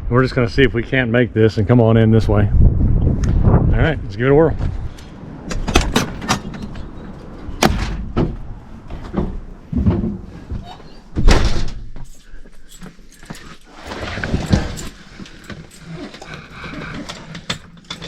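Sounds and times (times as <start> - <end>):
door shutting: 4.6 - 12.0
sharp knocks and thumps: 4.6 - 12.0.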